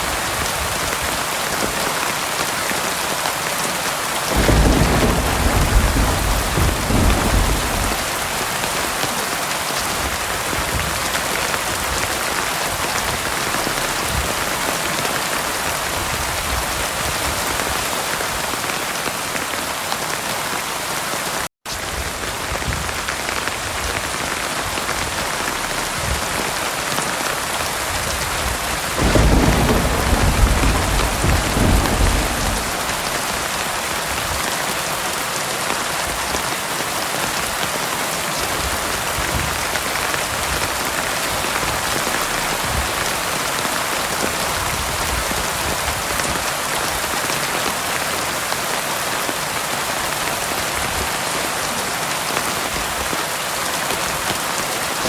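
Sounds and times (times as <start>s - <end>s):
heavy rain pouring: 0.0s - 55.0s
low rumble of thunder: 4.3s - 9.2s, 27.8s - 34.4s.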